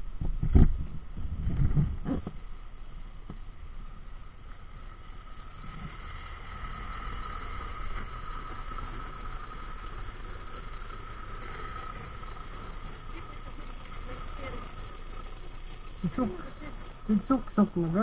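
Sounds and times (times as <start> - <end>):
high whine: 0.0 - 18.0
vehicle engine running: 0.0 - 18.0.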